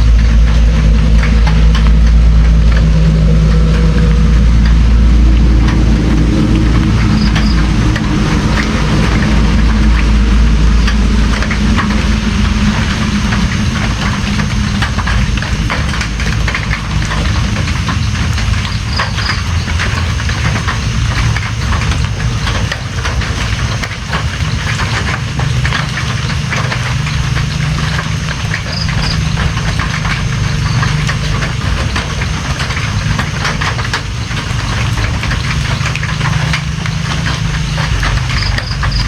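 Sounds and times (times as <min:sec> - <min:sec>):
deep steady rumble: 0:00.0 - 0:39.0
steady rain: 0:00.0 - 0:39.0.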